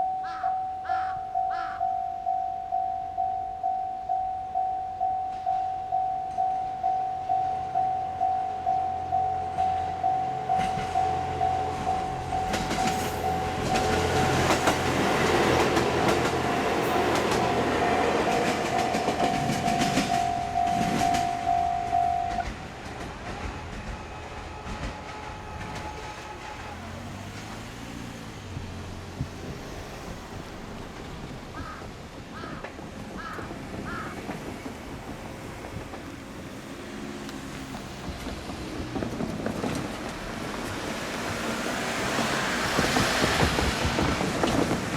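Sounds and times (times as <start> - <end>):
level-crossing alarm bell tone: 0.0 - 22.7, 23.4 - 27.0
railcar running noise: 0.0 - 44.9.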